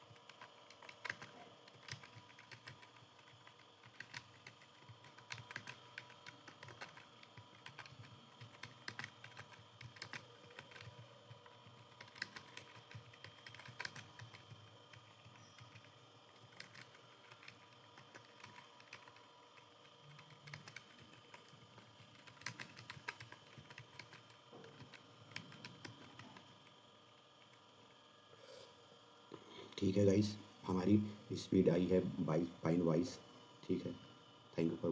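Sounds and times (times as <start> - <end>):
faint electrical whine: 0.0 - 34.9
keyboard keys clicking: 0.1 - 19.3, 20.1 - 26.4.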